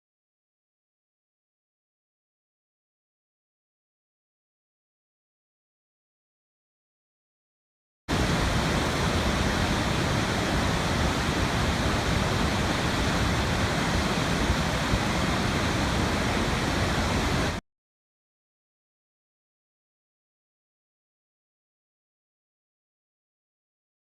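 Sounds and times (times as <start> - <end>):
flooded river rushing: 8.1 - 17.6.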